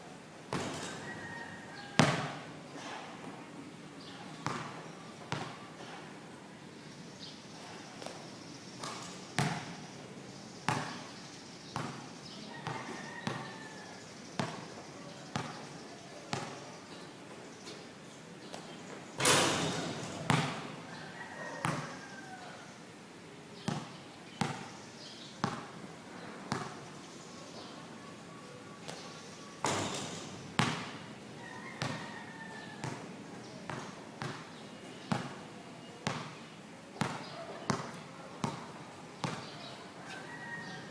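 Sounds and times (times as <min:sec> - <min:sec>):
basketball bouncing on a court: 0:02.0 - 0:02.5, 0:04.4 - 0:05.9, 0:08.8 - 0:09.8, 0:10.7 - 0:11.1, 0:11.8 - 0:13.6, 0:14.4 - 0:14.7, 0:15.3 - 0:15.7, 0:16.3 - 0:16.6, 0:19.8 - 0:20.7, 0:21.6 - 0:22.0, 0:23.7 - 0:24.8, 0:25.4 - 0:25.8, 0:26.5 - 0:26.9, 0:29.6 - 0:31.0, 0:31.8 - 0:32.0, 0:32.8 - 0:33.1, 0:33.7 - 0:35.4, 0:36.0 - 0:36.4, 0:37.0 - 0:39.6.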